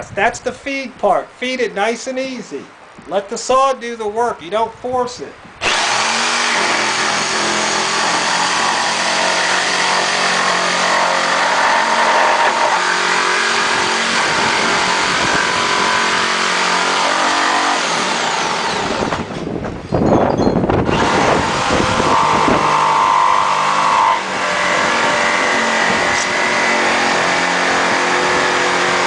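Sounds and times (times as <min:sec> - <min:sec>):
jigsaw cutting wood: 0:05.6 - 0:19.3, 0:20.9 - 0:29.0.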